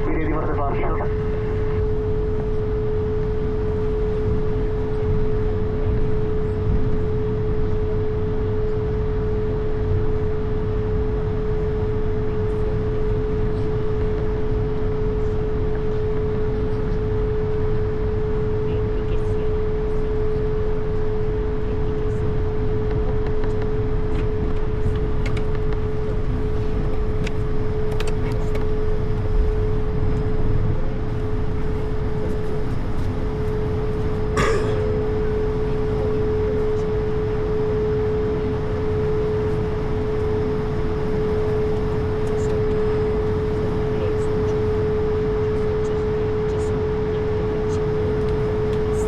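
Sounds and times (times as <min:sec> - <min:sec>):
aircraft cockpit engine rush: 0:00.0 - 0:49.0.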